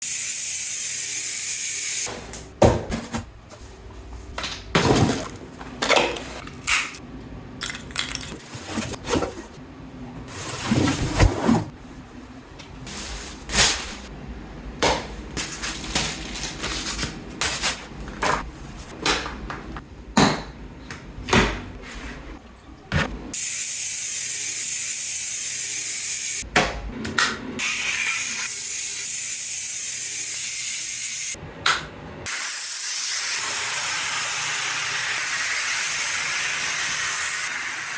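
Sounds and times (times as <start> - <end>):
steam cleaner hissing: 32.3 - 37.9.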